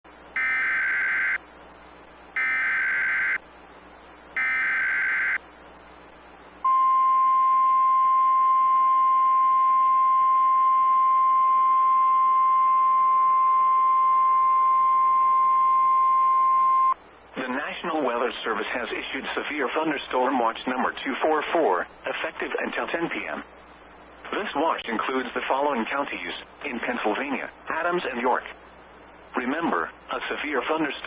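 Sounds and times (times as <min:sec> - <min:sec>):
digital data tone bursts: 0:00.4 - 0:01.4, 0:02.4 - 0:03.4, 0:04.4 - 0:05.4
steady alert tone: 0:00.4 - 0:01.4, 0:02.4 - 0:03.4, 0:04.4 - 0:05.4.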